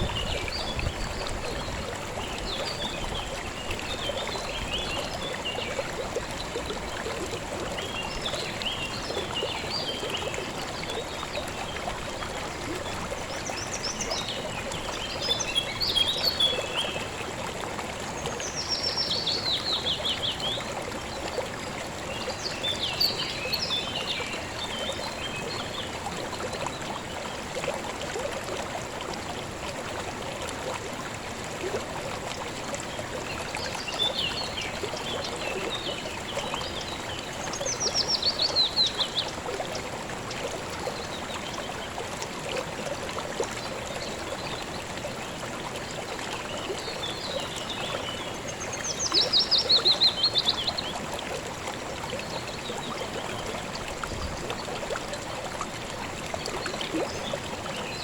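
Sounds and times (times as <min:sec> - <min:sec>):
river water flowing: 0:00.0 - 0:58.0
songbirds singing: 0:07.8 - 0:17.2, 0:22.1 - 0:25.9, 0:33.1 - 0:39.4, 0:46.4 - 0:51.0.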